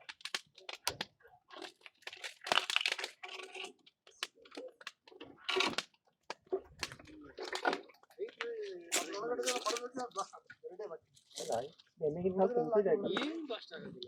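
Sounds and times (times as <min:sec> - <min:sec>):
dry fronds crunching and snapping: 0:00.0 - 0:10.4, 0:11.1 - 0:11.9.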